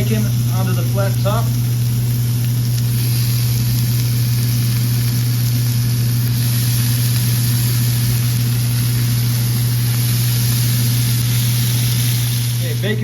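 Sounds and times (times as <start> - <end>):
bacon sizzling on a grill: 0.0 - 13.0
low motor hum: 0.0 - 13.0.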